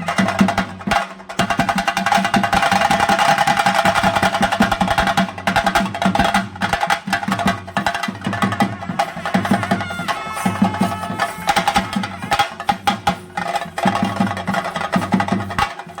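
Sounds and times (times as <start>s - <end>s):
drums beaten with sticks: 0.0s - 16.0s
held pitched note: 9.1s - 12.5s.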